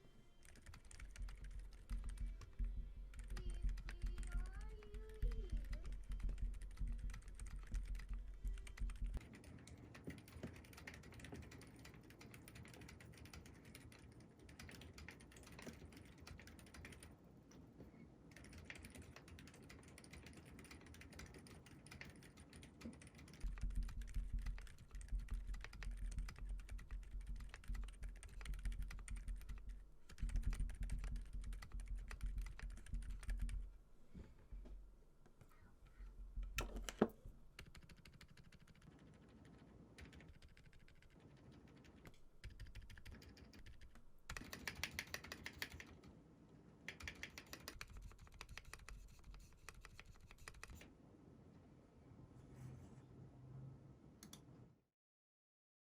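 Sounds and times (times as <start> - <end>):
mechanical keyboard typing: 0.4 - 17.2, 18.3 - 33.7, 36.4 - 46.2, 46.9 - 50.9.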